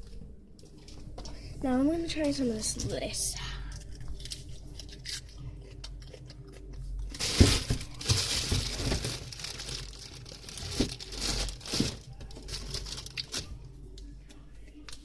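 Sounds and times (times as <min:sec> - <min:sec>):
lettuce crinkling and tearing: 0:03.8 - 0:14.1.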